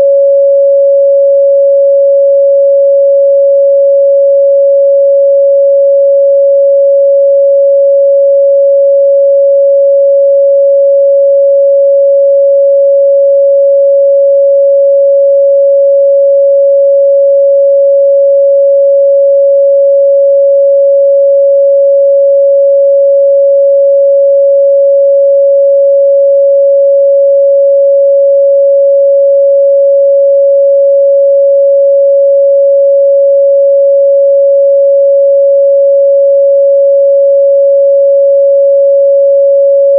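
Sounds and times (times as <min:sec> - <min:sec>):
sine-wave test tone: 0:00.0 - 0:39.9.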